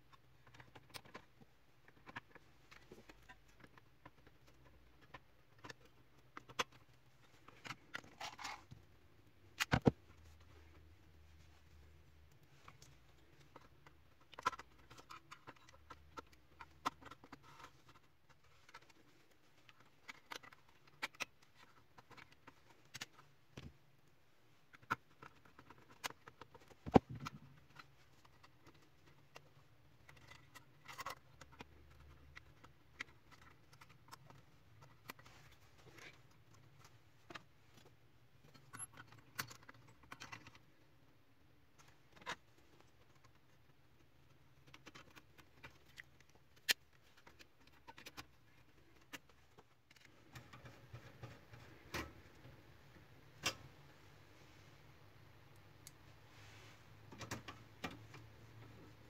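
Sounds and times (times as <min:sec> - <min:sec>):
clicks and taps of plastic parts: 0:24.7 - 0:35.3.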